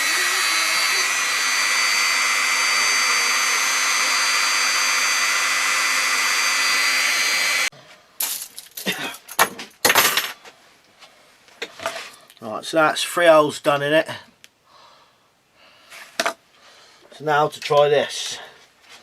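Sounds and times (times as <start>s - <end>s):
electric drill whining: 0.0s - 7.7s.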